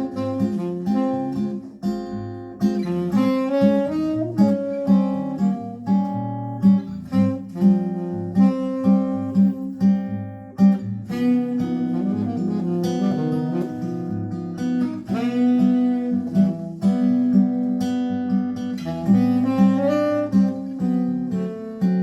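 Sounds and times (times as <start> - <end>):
acoustic guitar plucked notes: 0.0 - 22.0.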